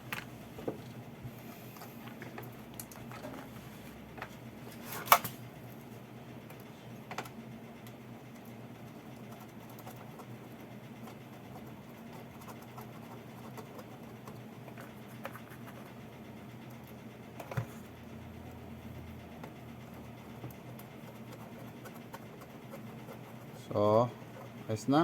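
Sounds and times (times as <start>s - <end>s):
small clicks and scratches: 6.5s - 10.4s, 11.0s - 17.9s, 19.3s - 23.6s.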